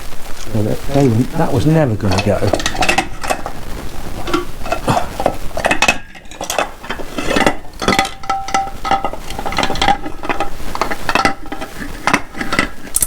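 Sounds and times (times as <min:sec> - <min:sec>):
metal parts and tools clinking: 0:02.0 - 0:03.6, 0:04.2 - 0:13.0.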